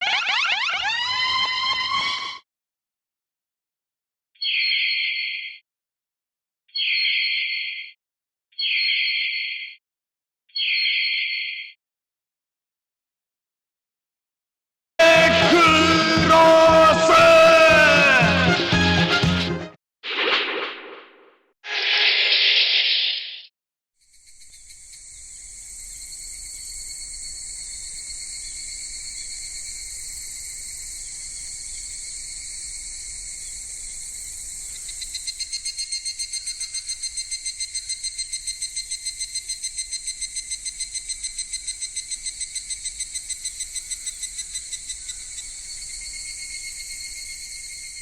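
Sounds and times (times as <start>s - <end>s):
shrill electronic whine: 0.0s - 2.4s.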